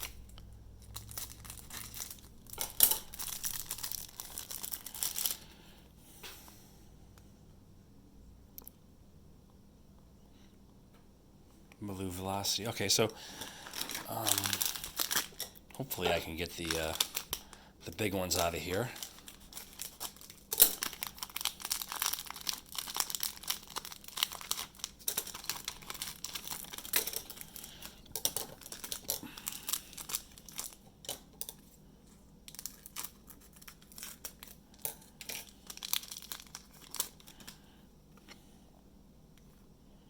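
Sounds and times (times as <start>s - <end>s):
plastic wrapper crinkling and tearing: 0.0s - 5.5s, 12.8s - 31.7s, 32.4s - 37.7s.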